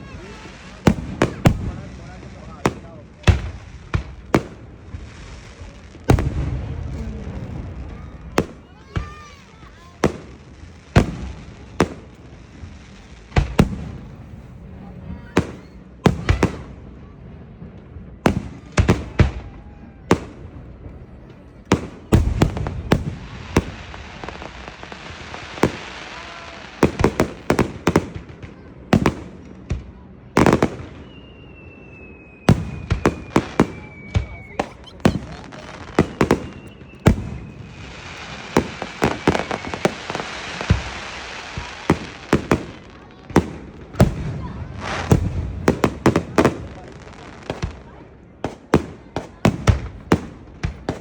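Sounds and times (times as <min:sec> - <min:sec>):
fireworks bangs: 0:00.0 - 0:51.0
fireworks crackling: 0:00.0 - 0:51.0
high falling whistle: 0:31.0 - 0:35.0.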